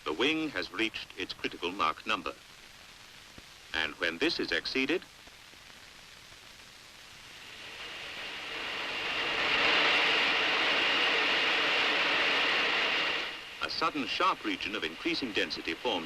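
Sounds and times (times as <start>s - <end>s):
jet-like roar with high whine: 7.1s - 16.0s.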